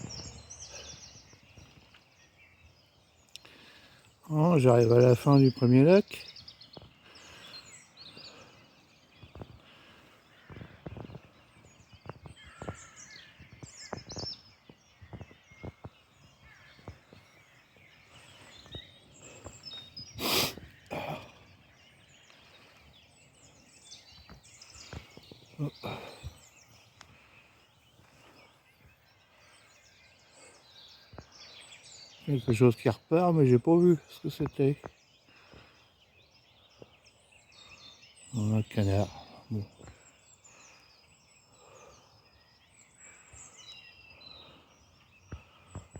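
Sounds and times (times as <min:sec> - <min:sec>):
small birds chirping: 0:00.0 - 0:45.9.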